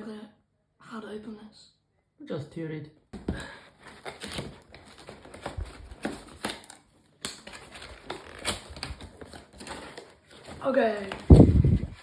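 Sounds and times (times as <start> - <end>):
cardboard box being torn open: 3.8 - 10.1.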